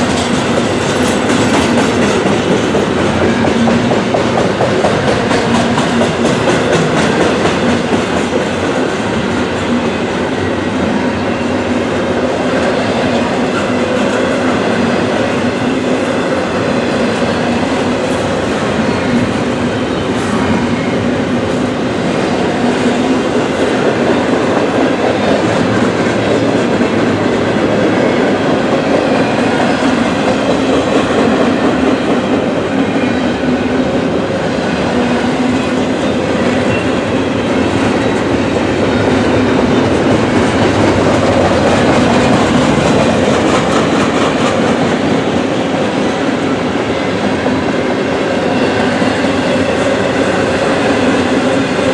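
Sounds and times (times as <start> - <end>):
freight train cars rolling past: 0.0 - 51.9.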